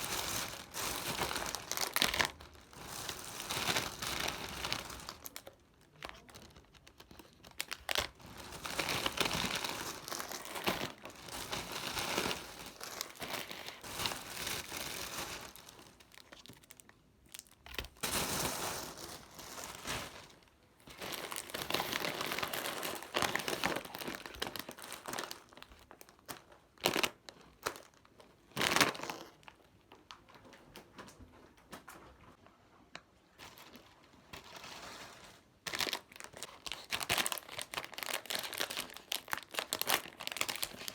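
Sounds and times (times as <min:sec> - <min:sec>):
packaging crinkling: 0:00.0 - 0:29.6, 0:34.4 - 0:40.9.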